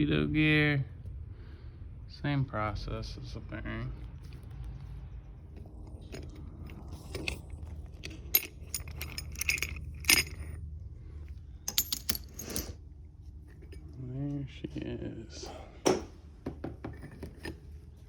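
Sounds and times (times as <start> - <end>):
steady low hum: 0.0 - 18.0
metal tools clinking: 5.5 - 10.6, 11.6 - 12.8, 16.9 - 17.9.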